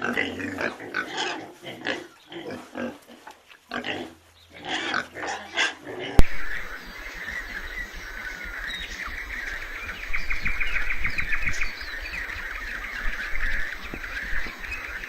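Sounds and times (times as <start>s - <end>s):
small birds chirping: 1.8s - 4.8s, 6.2s - 15.0s
bird rapid trill: 6.2s - 15.0s.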